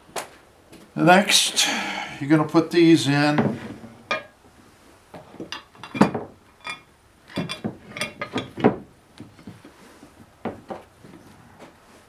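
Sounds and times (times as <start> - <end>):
metal bolts clinking and knocking: 5.5 - 8.8.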